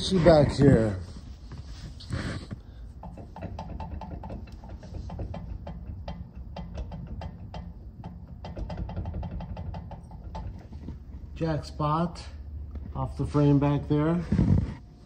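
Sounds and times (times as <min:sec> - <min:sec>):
low steady rumble: 0:00.0 - 0:15.0
rapid mechanical clicking: 0:03.0 - 0:11.0.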